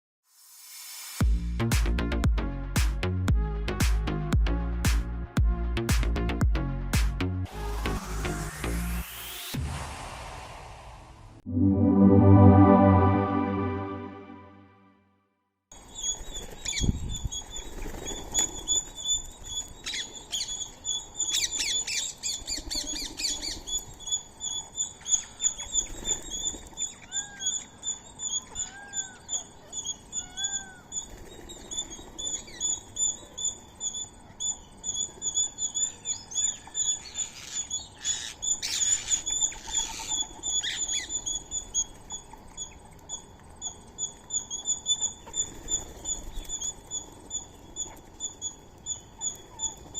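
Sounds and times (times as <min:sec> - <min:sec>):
rising-and-falling bird calls: 0:20.5 - 0:41.9.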